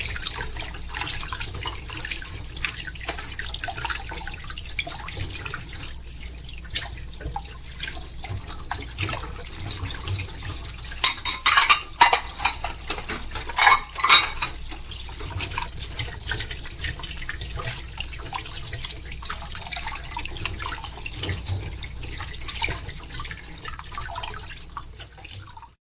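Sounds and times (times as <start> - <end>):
tap running into sink: 9.8 - 15.4
dishes and cutlery clinking: 11.0 - 15.0.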